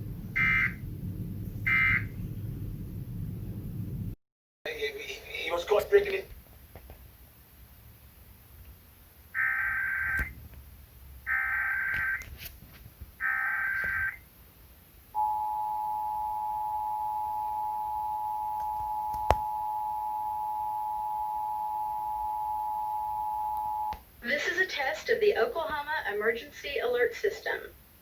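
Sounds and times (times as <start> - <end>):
two-tone attention signal: 15.2 - 23.9.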